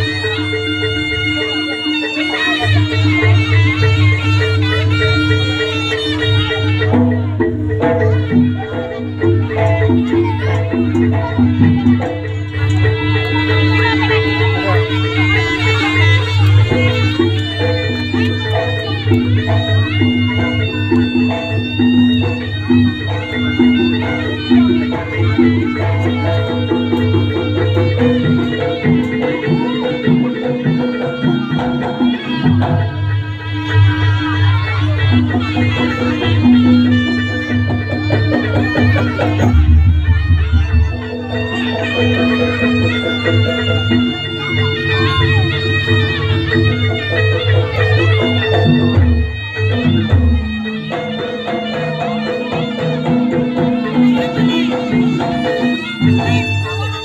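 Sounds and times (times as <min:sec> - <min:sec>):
drums: 0:00.0 - 0:57.0
reed pipe melody: 0:00.0 - 0:57.0
heavy low drum beats: 0:35.0 - 0:51.4.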